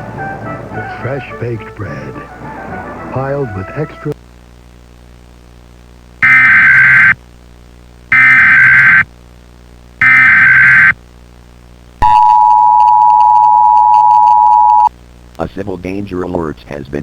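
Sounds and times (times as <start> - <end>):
two-tone attention signal: 6.2 - 7.2, 8.1 - 9.0, 10.0 - 10.9, 12.0 - 14.9
warbling data bursts: 6.2 - 7.2, 8.1 - 9.0, 10.0 - 10.9.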